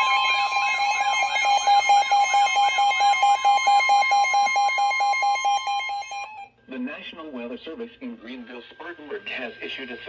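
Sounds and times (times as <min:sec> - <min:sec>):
rapid electronic beeping: 0:00.0 - 0:06.1
loud steady high tone: 0:00.0 - 0:06.6.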